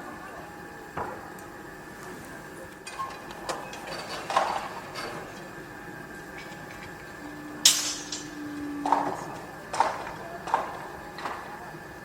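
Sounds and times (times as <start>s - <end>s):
machine hum: 0.0s - 12.0s
metallic knocks and clanks: 7.7s - 9.0s.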